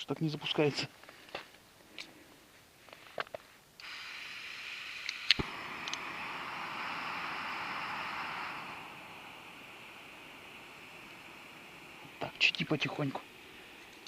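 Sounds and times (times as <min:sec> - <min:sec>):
gas burner hissing: 0:03.7 - 0:14.0
sharp click: 0:05.0 - 0:06.0.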